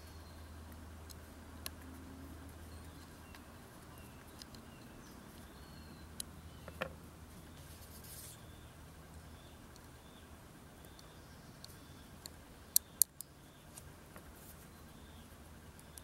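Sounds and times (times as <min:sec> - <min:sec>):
low steady hum: 0:00.0 - 0:16.0
sharp metallic clicks: 0:10.8 - 0:13.3.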